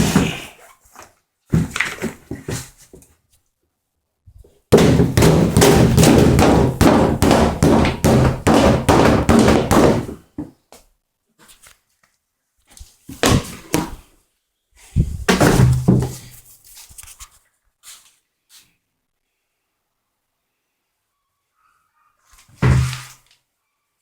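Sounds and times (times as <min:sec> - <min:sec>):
thuds on plastic car bumper: 0:04.7 - 0:10.2.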